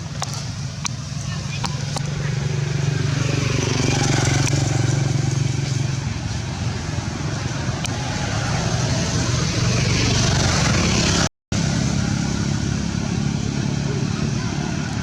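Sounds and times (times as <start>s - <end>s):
traffic noise: 0.0s - 15.0s
vehicle engine humming: 0.0s - 15.0s.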